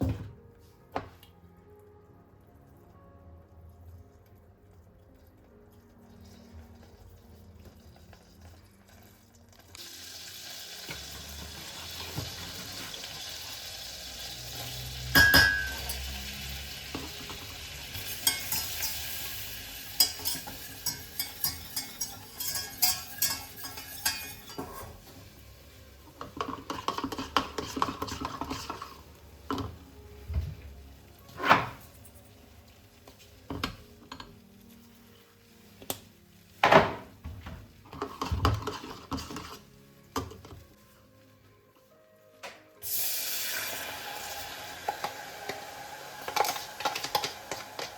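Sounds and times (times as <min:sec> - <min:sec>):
food sizzling in frying pan: 0:09.4 - 0:36.6, 0:42.8 - 0:47.9
utensils and dishes clinking: 0:14.6 - 0:25.2, 0:26.0 - 0:29.9, 0:37.8 - 0:40.7, 0:44.7 - 0:47.9
utensil scraping pan: 0:20.3 - 0:25.1, 0:26.3 - 0:29.0, 0:37.9 - 0:39.7.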